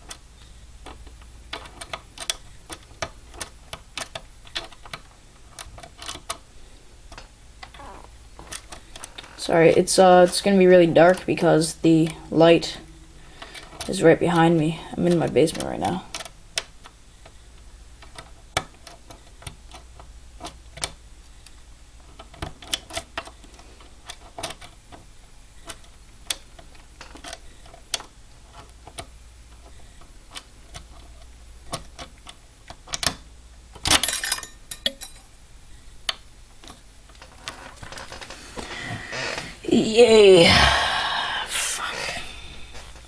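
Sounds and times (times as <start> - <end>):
lock pick metal clicks and scrapes: 0.8 - 6.4, 18.0 - 25.0, 25.6 - 33.2.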